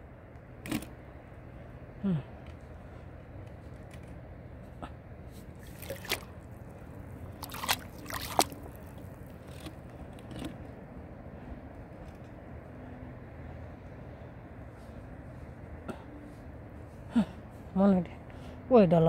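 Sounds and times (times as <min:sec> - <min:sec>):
hands digging in wet sand: 0:05.4 - 0:06.4, 0:07.3 - 0:09.3.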